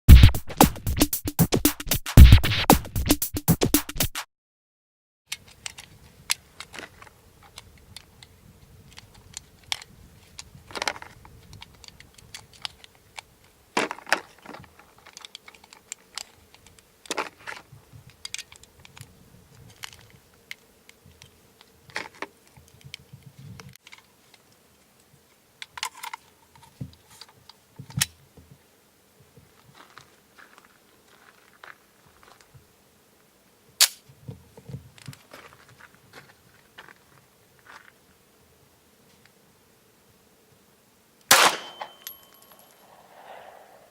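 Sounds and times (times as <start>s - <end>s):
pistol mechanical clicks: 33.8s - 34.0s
pistol snap: 33.8s - 34.0s, 41.3s - 43.7s.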